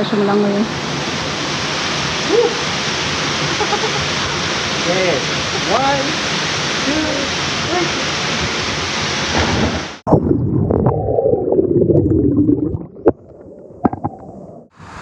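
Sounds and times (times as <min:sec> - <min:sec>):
waterfall roaring: 0:00.0 - 0:10.0
underwater gurgling and bubbling: 0:09.5 - 0:14.7.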